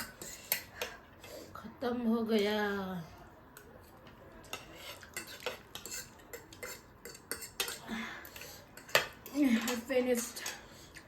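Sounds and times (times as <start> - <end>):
cutlery clinking on dishes: 0.0 - 1.0, 3.6 - 11.0.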